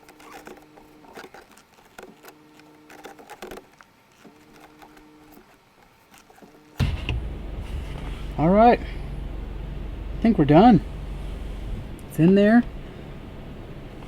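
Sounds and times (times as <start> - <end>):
soft low hum: 6.8 - 14.0.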